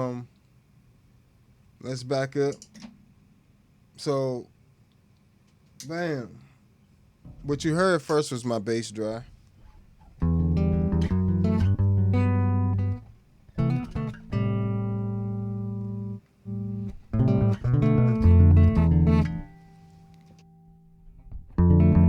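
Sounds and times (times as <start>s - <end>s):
electric bass guitar notes: 10.1s - 19.7s, 20.3s - 22.0s.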